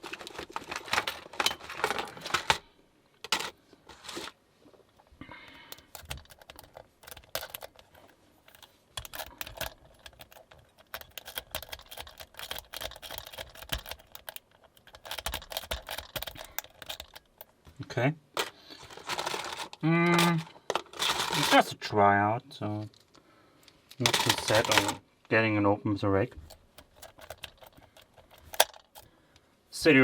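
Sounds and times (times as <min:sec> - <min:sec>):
lock pick clicking and scraping: 0:05.7 - 0:17.5, 0:26.4 - 0:29.1.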